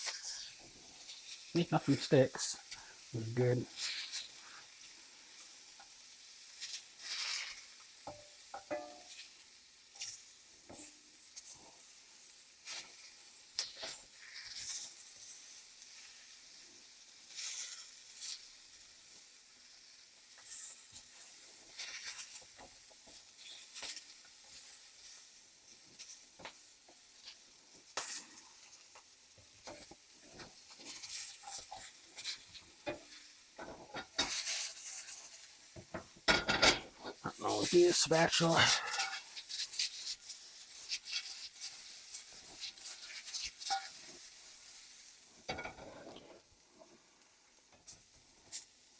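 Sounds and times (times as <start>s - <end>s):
crackles and pops of frying: 0.0s - 48.9s
shrimp sizzling in hot oil: 0.0s - 48.9s.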